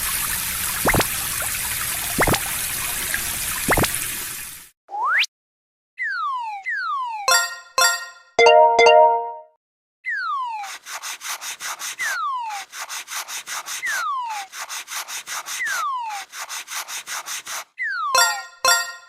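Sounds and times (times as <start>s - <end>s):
rapid rasping strokes: 10.6s - 17.8s.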